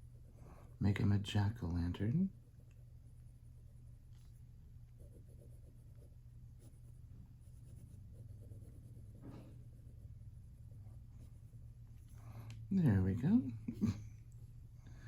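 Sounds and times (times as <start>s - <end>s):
pencil scratching on paper: 5.0s - 11.5s.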